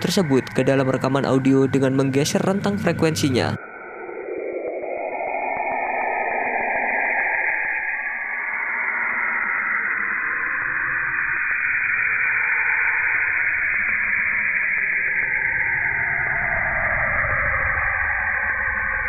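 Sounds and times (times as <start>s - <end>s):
dense steady high hiss: 0.0s - 3.6s
faint sweeping tones: 0.0s - 12.6s.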